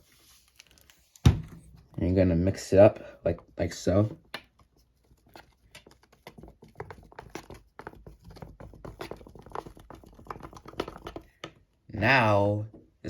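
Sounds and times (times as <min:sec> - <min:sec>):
skewer stirring sticky paste: 0:02.5 - 0:11.5.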